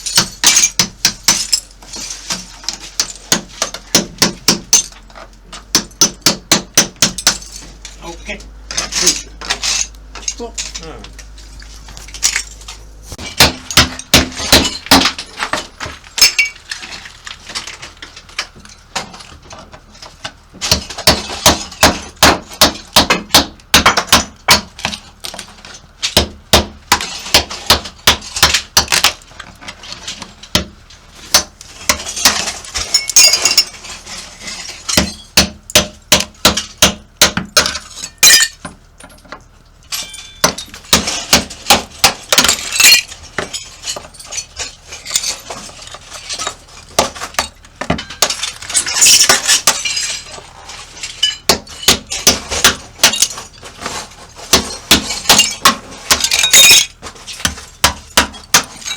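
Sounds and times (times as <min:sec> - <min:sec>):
hammer striking chisel: 0:05.7 - 0:07.4.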